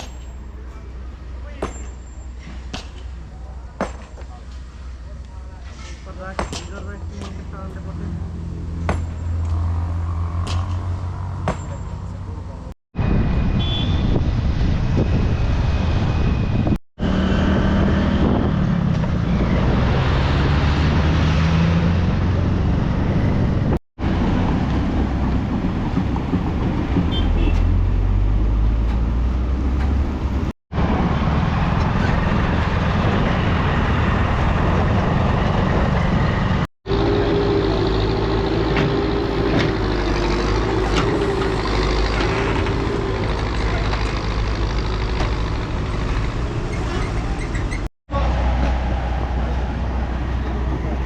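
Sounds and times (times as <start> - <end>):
cars and trucks passing: 0.0 - 51.0
wavering engine whine: 13.0 - 23.7.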